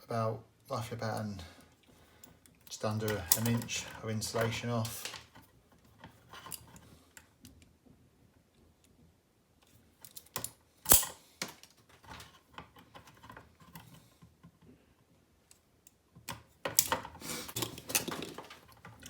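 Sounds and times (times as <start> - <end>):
cable insulation clicks and snaps: 2.6 - 6.6
handling noise: 16.6 - 19.0.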